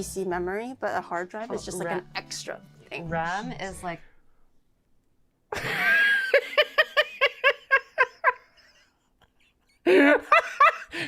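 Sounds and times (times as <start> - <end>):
woman laughing: 5.5 - 11.0.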